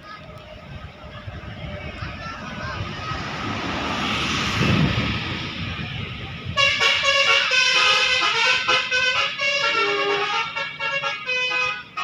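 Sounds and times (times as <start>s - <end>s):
bus rumbling past: 0.0s - 12.0s
musical bus horn: 6.5s - 12.0s.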